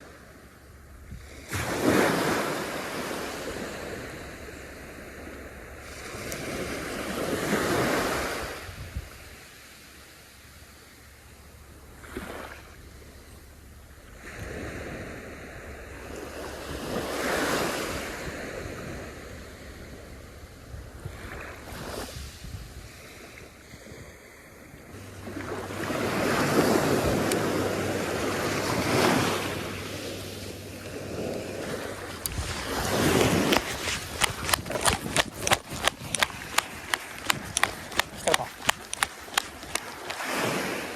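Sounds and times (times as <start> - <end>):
ocean waves breaking: 21.1 - 40.9
wind buffeting microphone: 31.1 - 40.9.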